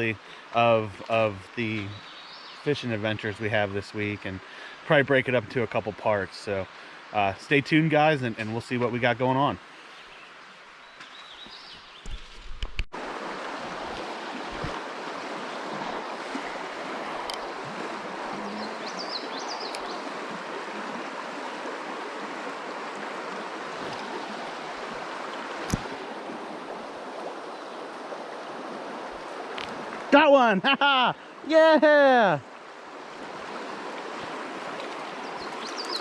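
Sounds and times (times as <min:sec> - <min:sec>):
stream flowing: 0:00.0 - 0:36.0
bird chirping: 0:18.4 - 0:20.0, 0:35.2 - 0:36.0.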